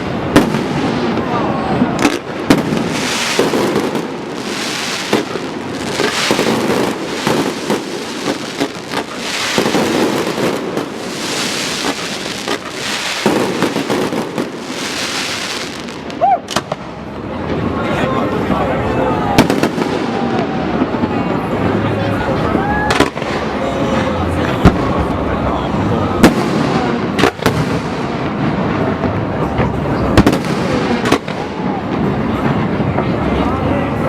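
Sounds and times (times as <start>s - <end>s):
fireworks sharp bangs: 0.0s - 17.7s, 19.3s - 21.8s, 26.2s - 33.2s
fireworks bursting and crackling: 0.0s - 17.8s, 19.2s - 21.9s, 26.1s - 33.4s.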